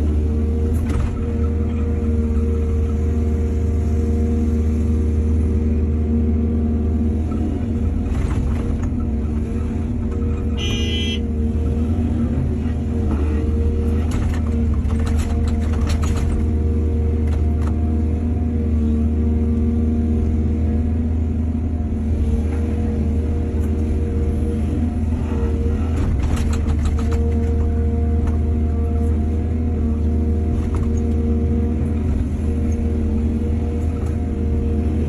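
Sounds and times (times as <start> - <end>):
excavator diesel engine running: 0.0 - 35.0
excavator clattering: 13.0 - 17.8, 25.7 - 28.4.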